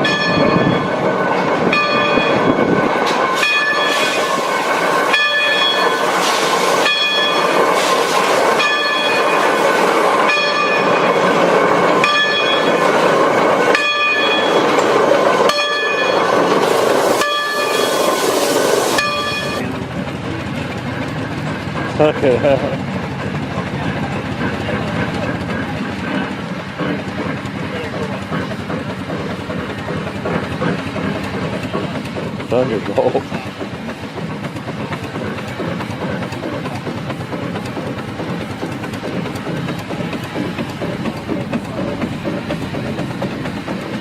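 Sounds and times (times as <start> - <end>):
steam train running: 0.0 - 44.0
high ringing tones: 19.0 - 19.7.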